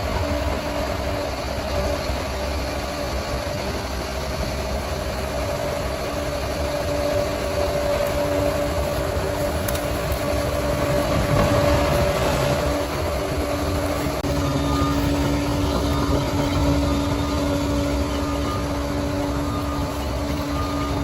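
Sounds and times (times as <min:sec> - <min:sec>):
bulldozer diesel engine rumbling: 0:00.0 - 0:21.0.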